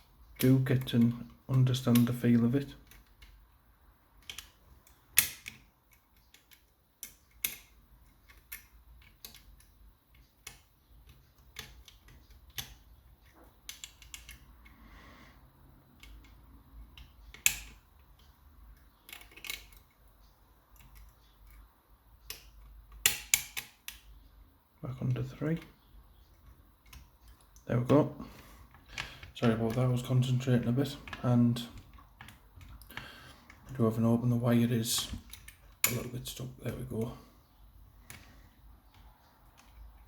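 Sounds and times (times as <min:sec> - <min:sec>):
lock picks clicking in lock: 0:04.2 - 0:14.7, 0:18.8 - 0:20.0.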